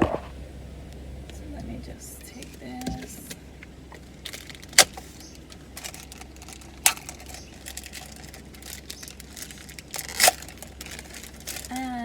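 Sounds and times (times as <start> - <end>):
small ticking and rattling: 0.9 - 12.0
sharp plastic clicks: 2.8 - 11.9.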